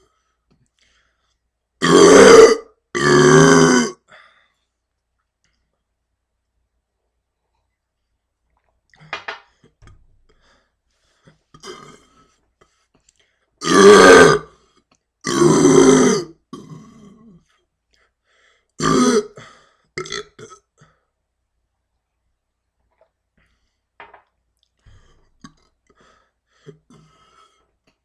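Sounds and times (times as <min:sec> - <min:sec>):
person burping: 0:01.8 - 0:04.1, 0:11.6 - 0:12.2, 0:13.6 - 0:14.5, 0:15.2 - 0:17.4, 0:18.8 - 0:20.8.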